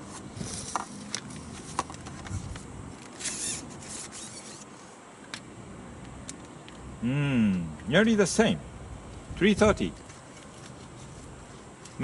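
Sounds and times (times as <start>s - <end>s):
short rasping sounds: 3.2s - 4.9s.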